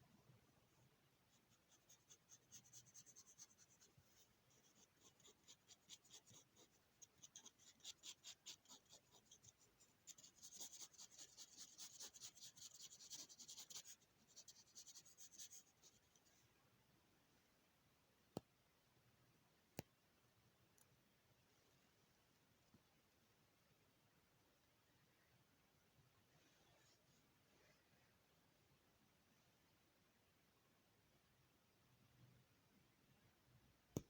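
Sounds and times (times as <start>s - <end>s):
pencil strokes scratching on paper: 1.3s - 16.4s.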